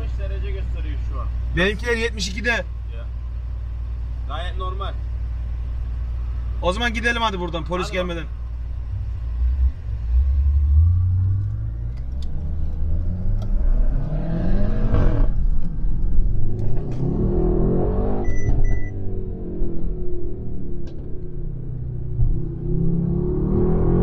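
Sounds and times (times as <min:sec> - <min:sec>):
car engine accelerating hard: 0:08.8 - 0:24.0.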